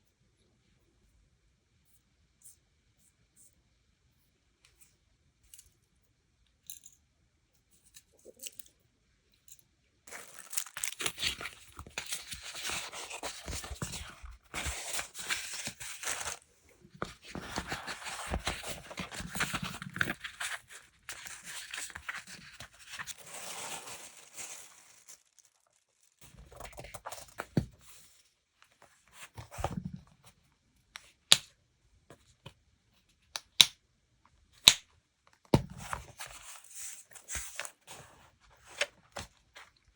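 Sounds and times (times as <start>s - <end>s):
packaging being torn and crinkled: 10.1s - 16.4s, 17.4s - 27.3s.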